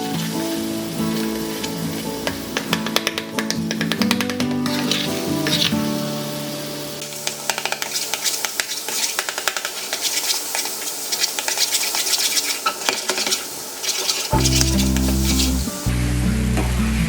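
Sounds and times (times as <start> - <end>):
utensil scraping cooking vessel: 0.0 - 3.0, 3.7 - 6.0, 7.1 - 15.9
background music: 0.0 - 7.5
light hiss: 0.0 - 16.0.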